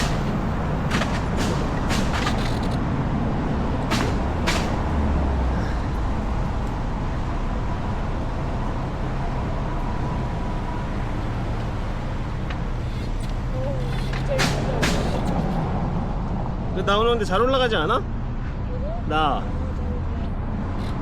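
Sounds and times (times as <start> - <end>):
sharp clicks or knocks: 0.0 - 2.8, 3.8 - 5.0
road traffic rumble: 0.0 - 21.0.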